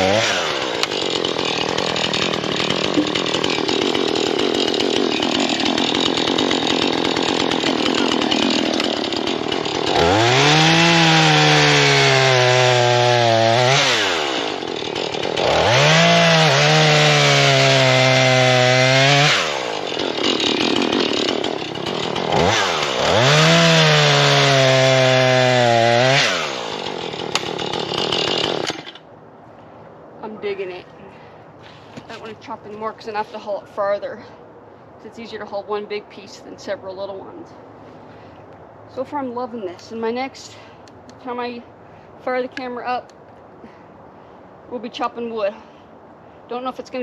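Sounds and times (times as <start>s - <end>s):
chainsaw cutting wood: 0.0s - 29.0s.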